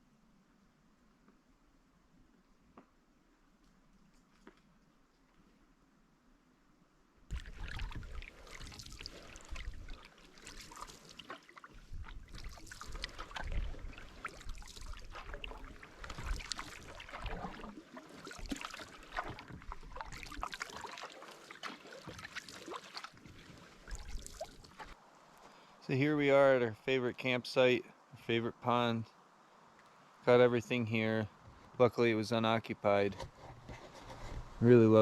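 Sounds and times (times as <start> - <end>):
wind on microphone: 7.3 - 10.0
paddle splashing in water: 7.3 - 25.0.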